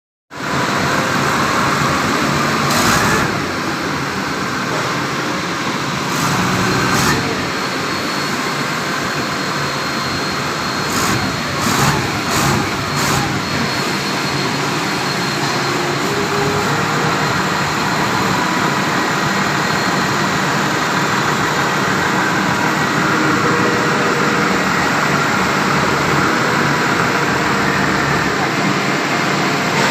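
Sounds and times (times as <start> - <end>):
forklift engine idling: 0.4 - 29.9.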